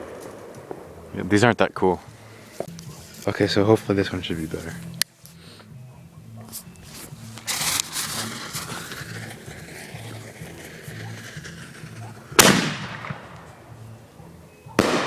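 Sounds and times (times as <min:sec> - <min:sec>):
firework burst hissing and crackling: 0:07.0 - 0:13.5
loud sharp firework bang: 0:12.3 - 0:13.4, 0:14.8 - 0:15.0.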